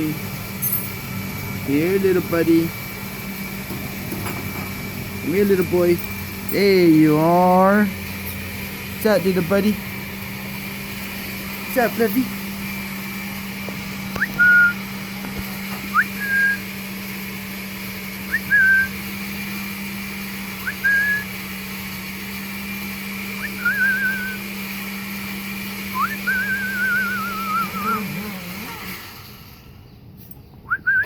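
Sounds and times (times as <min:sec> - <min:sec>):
person whistling: 0:14.2 - 0:14.8, 0:15.9 - 0:16.6, 0:18.3 - 0:19.0, 0:20.6 - 0:21.3, 0:23.4 - 0:24.4, 0:26.0 - 0:28.0, 0:30.7 - 0:31.0.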